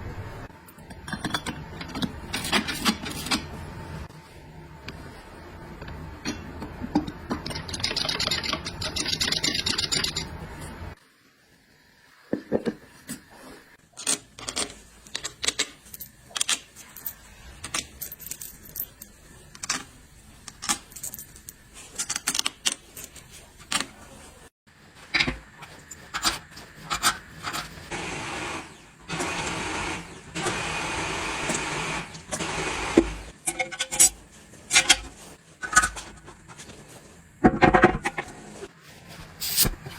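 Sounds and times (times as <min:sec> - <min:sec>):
metal parts clinking: 0:07.4 - 0:10.4, 0:14.0 - 0:23.8.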